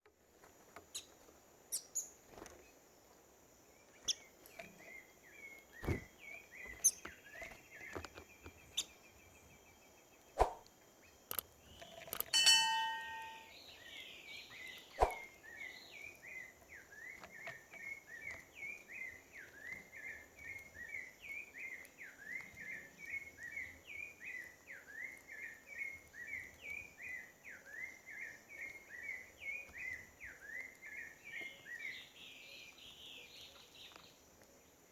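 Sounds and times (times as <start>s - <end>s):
bird chirping: 0.7s - 34.9s
bird clicks: 11.3s - 13.4s
loud ringing bird call: 12.3s - 13.8s
faint high hum: 12.4s - 13.8s.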